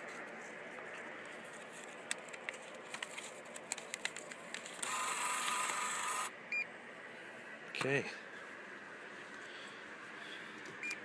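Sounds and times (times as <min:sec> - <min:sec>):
vending machine mechanical whirr: 0:00.0 - 0:11.0.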